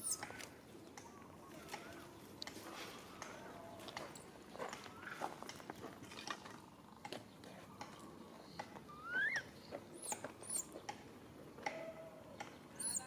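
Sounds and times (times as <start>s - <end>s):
baby monkey squealing: 10.0s - 10.7s, 12.8s - 13.0s.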